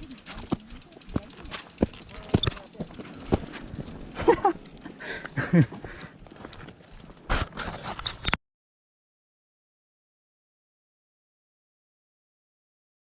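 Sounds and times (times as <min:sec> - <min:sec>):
sharp clicks and knocks: 0:00.0 - 0:03.9.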